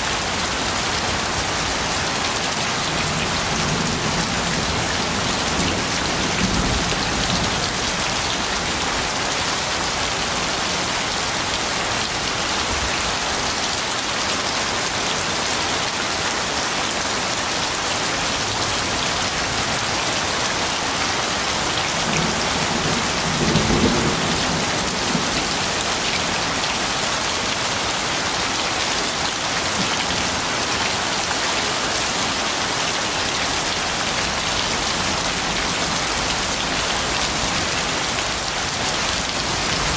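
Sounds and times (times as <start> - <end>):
steady rain falling: 0.0 - 39.9
low rumble of thunder: 22.1 - 25.6.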